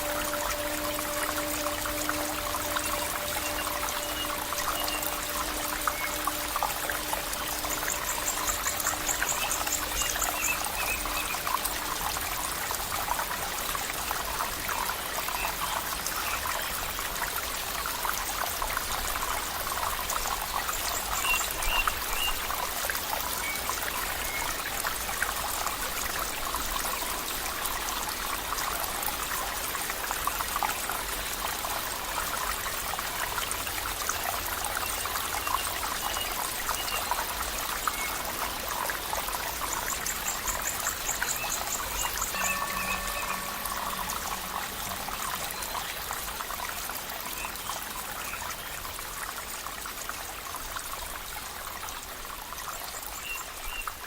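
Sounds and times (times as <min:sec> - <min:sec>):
stream water bubbling: 0:00.0 - 0:54.0
faint high chirps: 0:40.1 - 0:46.2.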